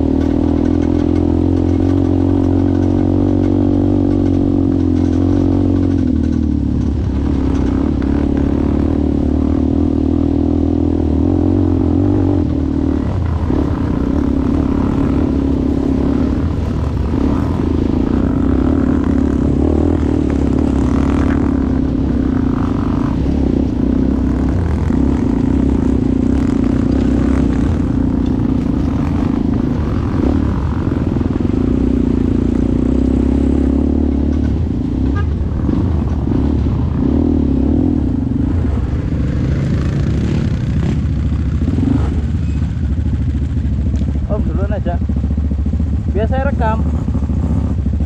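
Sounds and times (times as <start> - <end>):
atv engine running: 0.0 - 48.0.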